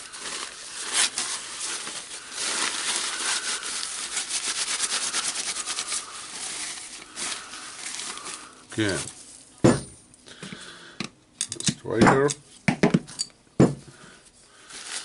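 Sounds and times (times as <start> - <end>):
small parts rubbing and scraping: 0.0 - 9.4.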